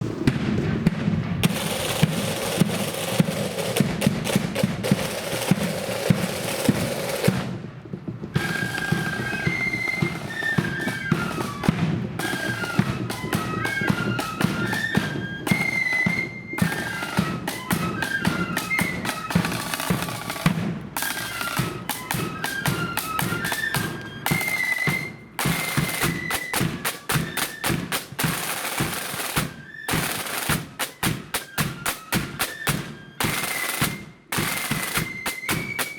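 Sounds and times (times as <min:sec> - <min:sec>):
snare and bass drumming: 0:00.0 - 0:35.9
flutes playing a melody: 0:01.5 - 0:07.4, 0:08.3 - 0:35.9.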